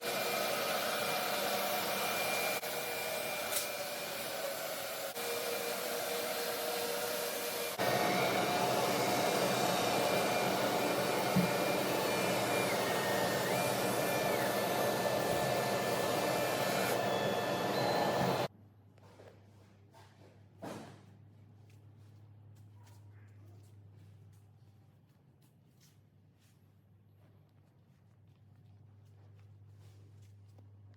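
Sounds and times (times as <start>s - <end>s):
router spindle cutting hiss: 1.8s - 18.5s.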